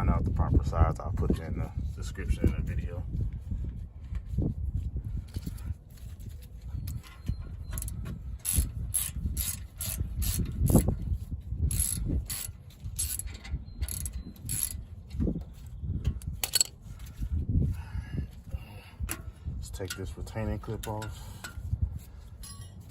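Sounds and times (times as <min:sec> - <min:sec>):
hand ratchet clicking: 0:07.7 - 0:10.9, 0:11.7 - 0:14.8, 0:16.1 - 0:16.7.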